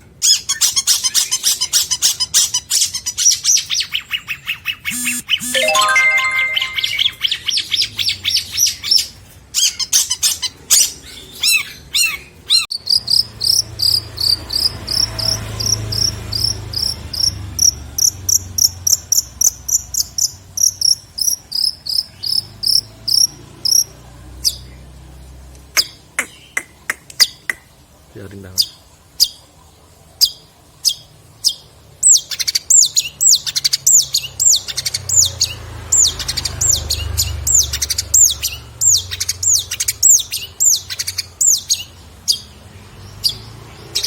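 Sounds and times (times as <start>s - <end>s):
shrike singing high chirps: 4.9s - 7.2s.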